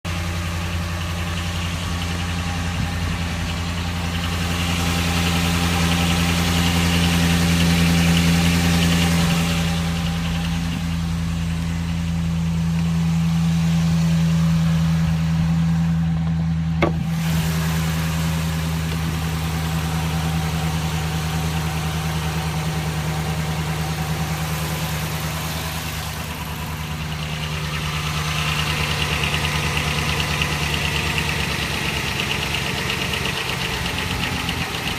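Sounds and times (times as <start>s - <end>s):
engine idling with a knock: 15.9s - 20.2s.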